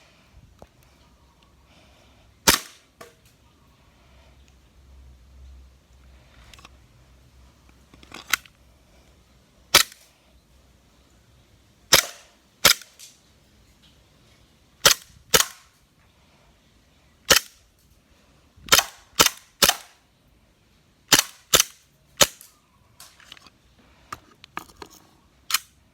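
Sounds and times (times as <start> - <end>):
airsoft pistol shots: 2.5 - 2.8, 11.9 - 12.9.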